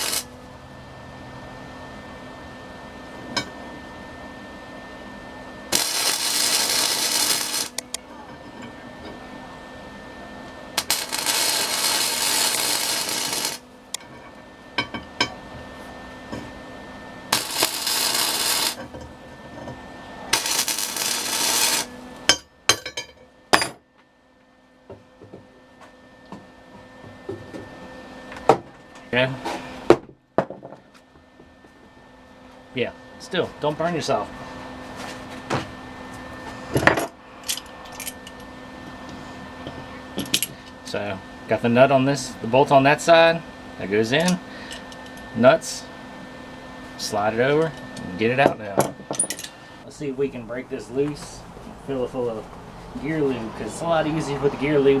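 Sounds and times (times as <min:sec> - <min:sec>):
welder arc crackling: 0:00.0 - 0:00.4, 0:05.7 - 0:08.0, 0:10.8 - 0:14.0, 0:17.3 - 0:18.9, 0:20.3 - 0:22.0.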